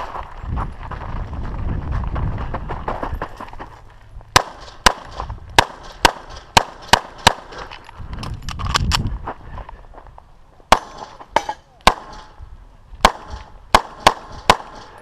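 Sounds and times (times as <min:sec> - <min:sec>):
pistol shots: 0:04.4 - 0:07.7, 0:10.7 - 0:12.4, 0:13.0 - 0:15.0.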